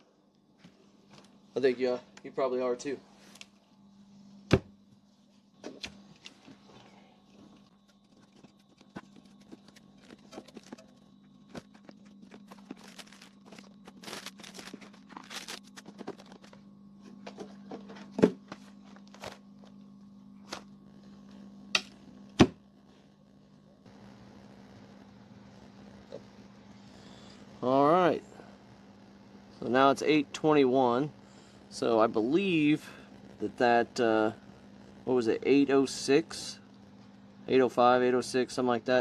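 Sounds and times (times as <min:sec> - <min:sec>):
low hum: 0:00.0 - 0:39.0.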